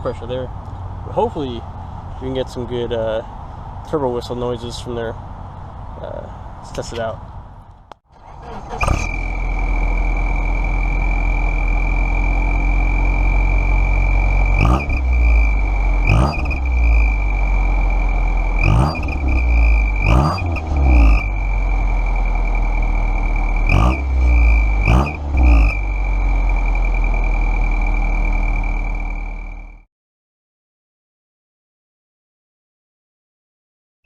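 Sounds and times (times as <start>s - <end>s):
car engine with exhaust whistle: 7.8s - 29.9s
throttle blips: 8.8s - 29.5s.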